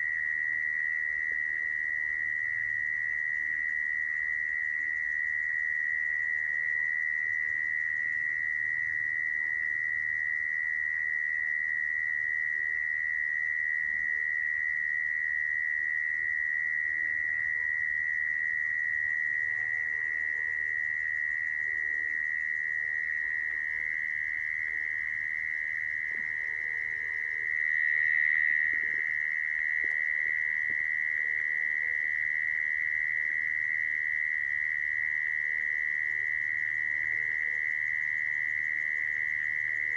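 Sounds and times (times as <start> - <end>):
mole cricket trilling: 0.0 - 39.9.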